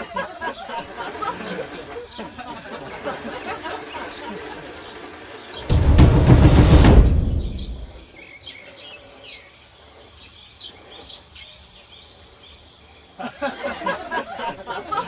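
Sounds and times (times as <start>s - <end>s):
birds chirping: 0.0s - 15.0s
loud noise: 5.6s - 8.0s.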